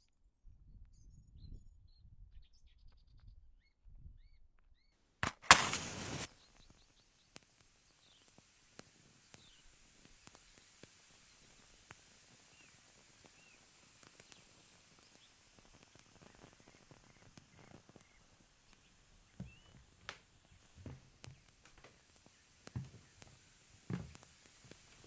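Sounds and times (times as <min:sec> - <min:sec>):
sharp click: 0:05.2 - 0:06.3
sudden loud burst: 0:05.2 - 0:06.3.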